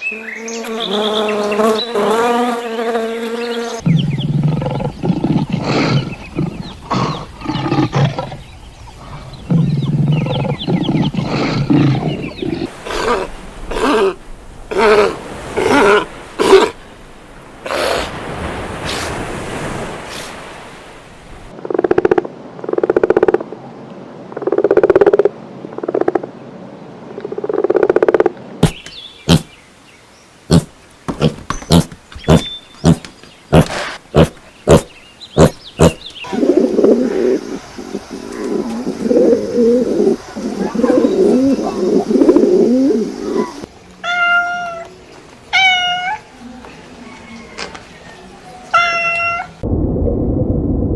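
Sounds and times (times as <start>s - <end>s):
hissing animal call: 3.8s - 16.8s, 17.6s - 18.2s, 31.7s - 43.7s
pigeon cooing: 3.9s - 8.4s, 9.0s - 16.8s, 35.4s - 43.7s
cat meowing: 44.0s - 44.9s, 45.6s - 46.3s, 48.8s - 49.6s.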